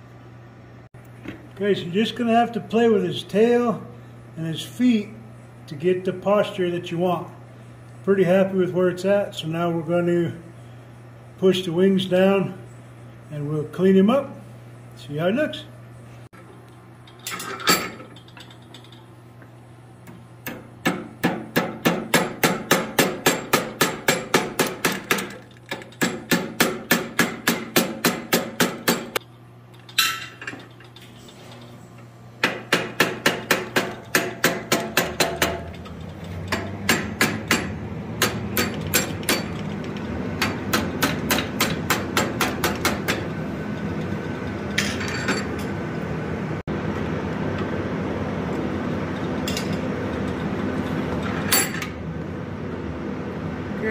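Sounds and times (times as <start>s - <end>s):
steady low hum: 0.0s - 53.9s
hammer striking steel on anvil: 20.5s - 24.8s, 32.4s - 35.7s, 36.5s - 39.5s.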